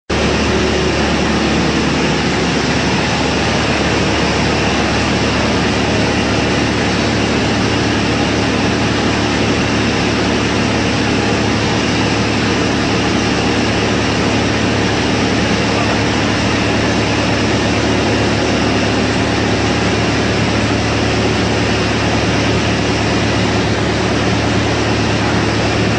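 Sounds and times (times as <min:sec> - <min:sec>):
wood chipper running: 0:00.1 - 0:25.9.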